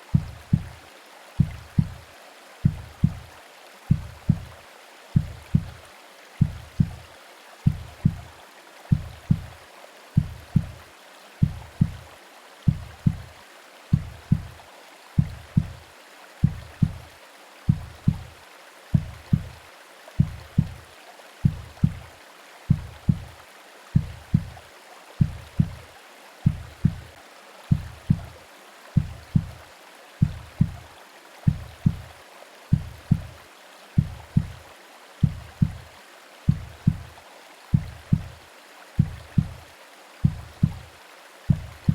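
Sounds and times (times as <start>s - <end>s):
heartbeat double thump: 0.0s - 0.8s, 1.4s - 2.0s, 2.6s - 3.3s, 3.9s - 4.6s, 5.2s - 5.8s, 6.4s - 8.3s, 8.9s - 9.6s, 10.2s - 10.8s, 11.4s - 12.1s, 12.7s - 13.3s, 13.9s - 14.6s, 15.2s - 15.8s, 16.4s - 17.0s, 17.7s - 18.3s, 19.0s - 19.6s, 20.2s - 20.8s, 21.4s - 22.1s, 22.7s - 23.3s, 24.0s - 24.6s, 25.2s - 25.8s, 26.5s - 27.1s, 27.7s - 28.4s, 29.0s - 29.6s, 30.2s - 30.8s, 31.5s - 32.1s, 32.7s - 33.4s, 34.0s - 34.6s, 35.2s - 35.9s, 36.5s - 37.1s, 37.7s - 38.4s, 39.0s - 39.6s, 40.2s - 40.8s, 41.5s - 41.9s
rain: 0.0s - 41.9s
white noise hiss: 0.0s - 41.9s.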